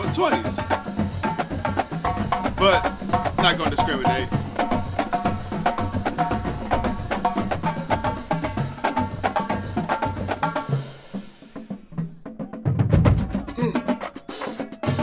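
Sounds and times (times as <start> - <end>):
bass drums: 0.0 - 15.0
snare and tenor drums: 0.0 - 15.0.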